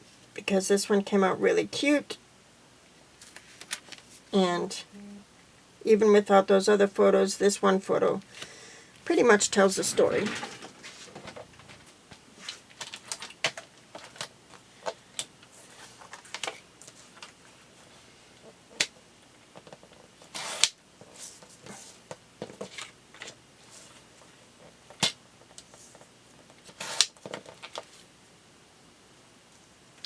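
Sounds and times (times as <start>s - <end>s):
paper rustling: 9.1s - 12.6s.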